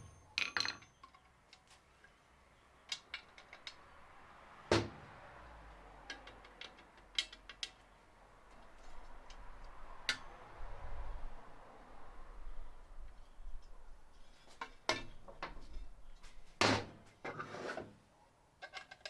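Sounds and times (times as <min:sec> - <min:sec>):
metal clicks: 0:02.8 - 0:03.9, 0:06.0 - 0:10.3
rough scraping: 0:17.1 - 0:18.0.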